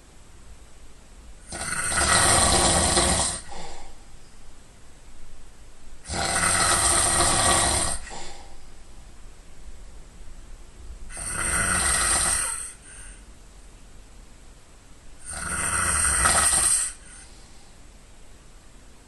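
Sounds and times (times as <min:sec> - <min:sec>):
person snoring loudly: 0:01.4 - 0:04.0, 0:06.0 - 0:08.6, 0:11.1 - 0:13.1, 0:15.2 - 0:17.3.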